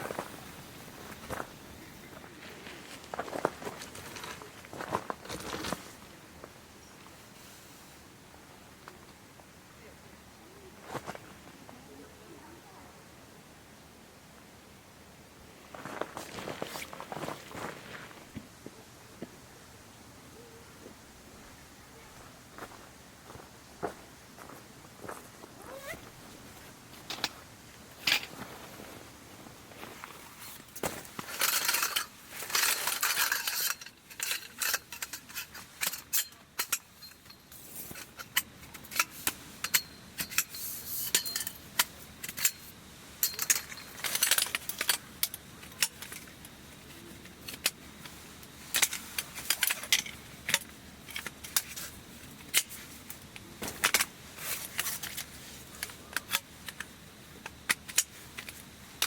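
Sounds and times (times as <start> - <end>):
rustling: 22.0 - 59.0
clinks and knocks of hard items: 30.4 - 46.5.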